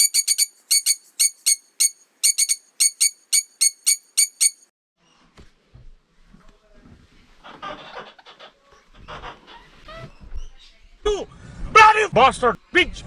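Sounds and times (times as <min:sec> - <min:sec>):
bird chirping: 0:00.0 - 0:04.6.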